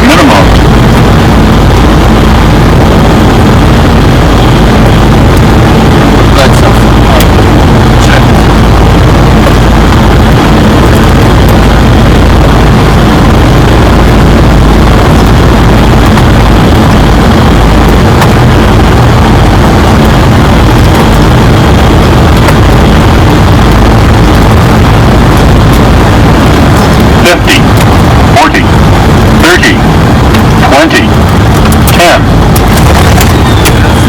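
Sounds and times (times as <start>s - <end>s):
loud rush of air: 0.0s - 34.0s
low engine hum: 0.0s - 34.0s.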